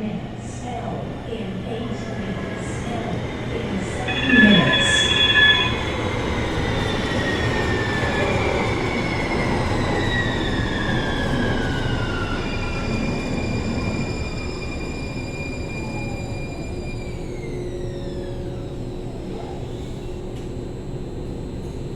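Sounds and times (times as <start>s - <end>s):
high whining tones falling: 3.9s - 6.1s.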